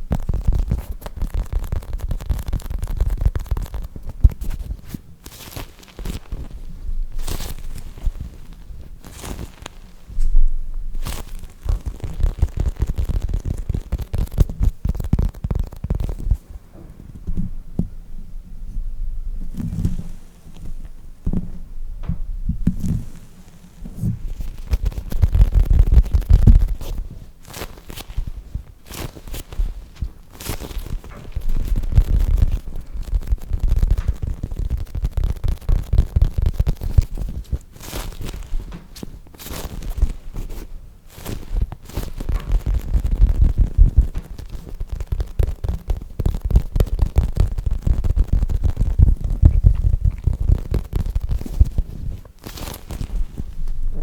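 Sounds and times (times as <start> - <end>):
squishy toys squeezed and rubbed: 0.0 - 6.6, 11.0 - 16.4, 23.9 - 53.6
rapid crackling and tapping: 0.0 - 10.2, 11.0 - 16.6, 22.6 - 54.0.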